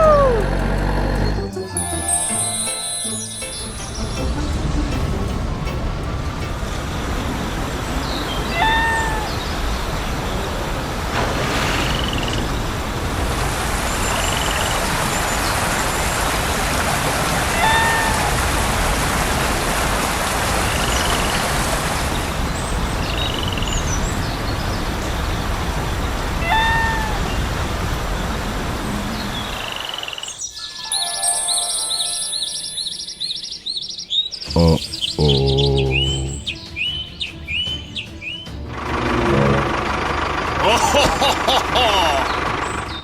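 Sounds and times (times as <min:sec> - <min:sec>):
music: 0:00.0 - 0:08.8, 0:30.8 - 0:32.7, 0:34.5 - 0:41.4
birdsong: 0:00.0 - 0:10.6, 0:20.7 - 0:43.0
machine running: 0:38.6 - 0:43.0.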